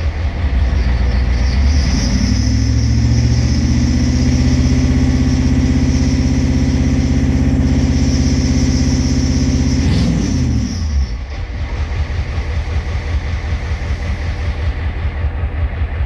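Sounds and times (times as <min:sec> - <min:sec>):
diesel engine idling roughly: 0:00.0 - 0:16.0.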